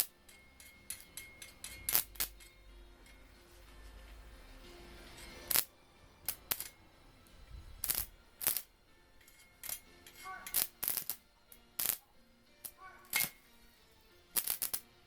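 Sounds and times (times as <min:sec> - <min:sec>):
metal parts clinking: 0:00.0 - 0:03.4, 0:05.1 - 0:06.8, 0:07.8 - 0:12.0, 0:12.7 - 0:13.5.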